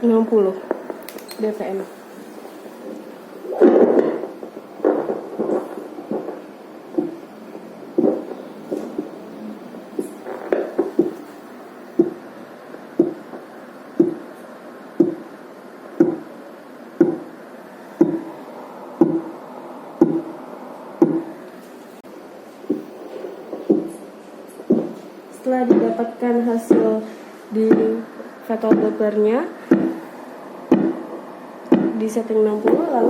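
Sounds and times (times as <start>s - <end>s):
low heartbeat pulse from loudspeaker: 3.5s - 7.2s, 8.0s - 8.4s, 10.0s - 11.2s, 12.0s - 12.3s, 13.0s - 13.4s, 14.0s - 14.3s, 15.0s - 15.3s, 15.9s - 16.3s, 17.0s - 17.3s, 18.0s - 18.4s, 19.0s - 19.4s, 20.0s - 20.4s, 21.0s - 21.3s, 23.5s - 24.0s, 24.6s - 25.0s, 25.6s - 27.0s, 27.6s - 29.0s, 29.7s - 30.1s, 30.7s - 32.0s.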